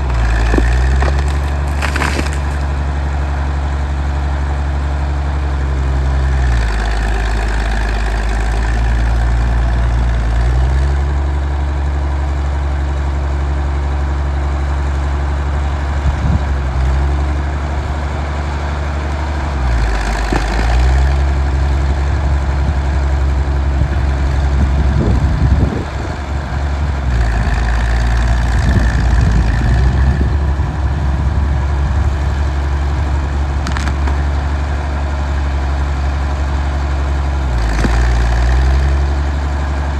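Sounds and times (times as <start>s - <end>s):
rough crunching: 0.0s - 3.5s, 16.6s - 39.9s
bulldozer diesel engine running: 0.0s - 39.9s.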